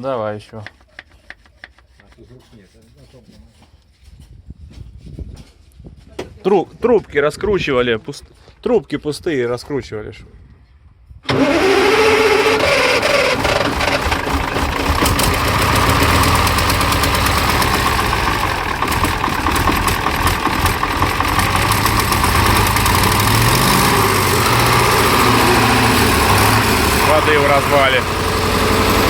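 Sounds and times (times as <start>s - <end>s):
diesel engine starting and running: 11.2s - 29.0s.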